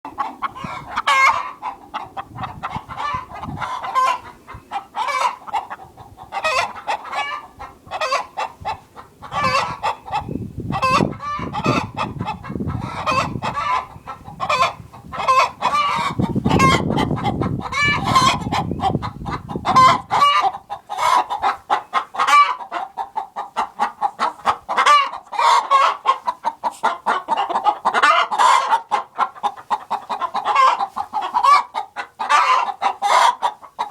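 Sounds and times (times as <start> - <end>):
hens clucking and cackling: 0.1 - 33.9.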